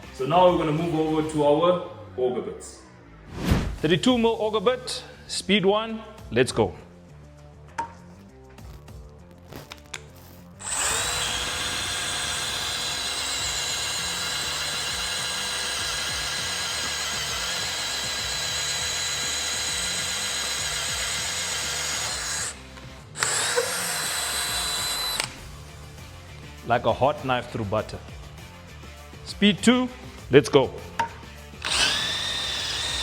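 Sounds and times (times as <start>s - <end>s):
drill motor whine: 10.6s - 22.6s, 23.2s - 25.4s, 31.6s - 33.0s.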